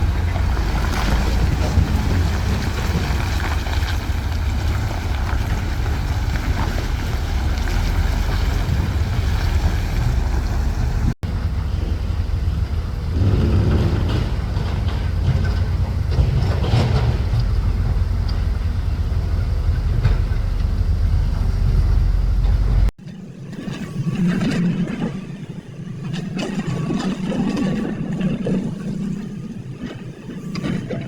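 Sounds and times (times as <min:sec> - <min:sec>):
heavy machinery diesel rumble: 0:00.0 - 0:22.9
wind buffeting microphone: 0:00.0 - 0:22.9.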